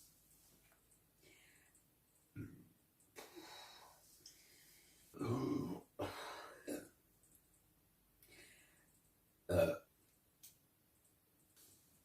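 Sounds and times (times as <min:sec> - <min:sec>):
faint breath: 0:03.2 - 0:05.2, 0:08.2 - 0:09.0
woman burping: 0:05.2 - 0:06.9, 0:09.5 - 0:09.9.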